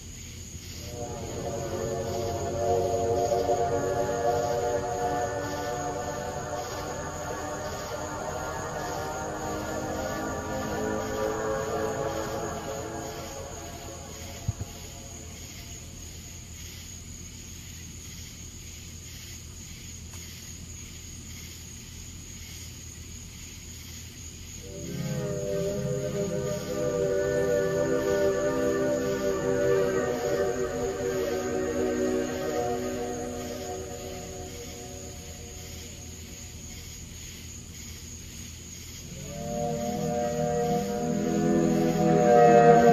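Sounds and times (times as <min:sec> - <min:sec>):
high insect trill: 0:00.0 - 0:42.9
insects chirping in pulses: 0:00.0 - 0:42.9
low hum: 0:00.8 - 0:15.8, 0:24.6 - 0:36.8, 0:39.1 - 0:42.9
high-pitched tone: 0:00.9 - 0:15.4, 0:24.6 - 0:36.2, 0:39.1 - 0:42.9.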